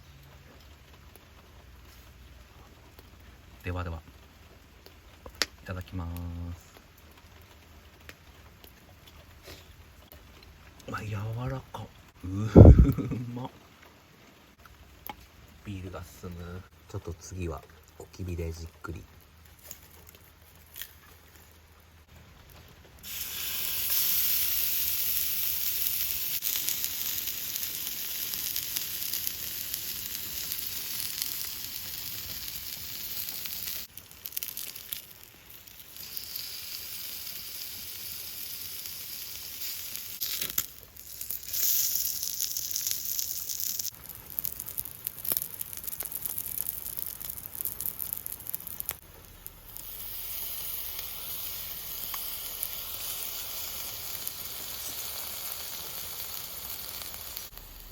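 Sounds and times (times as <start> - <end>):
food sizzling on a griddle: 23.0 - 57.9.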